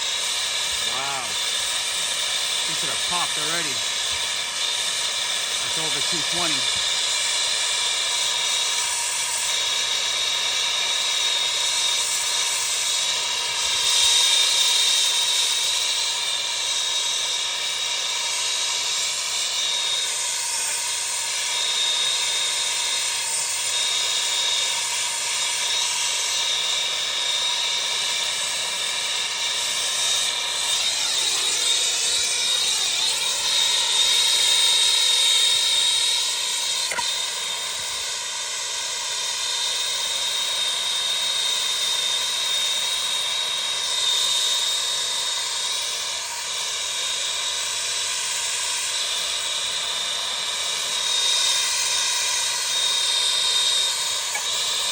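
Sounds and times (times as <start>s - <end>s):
hissing roar of heater flame: 0.0s - 40.9s.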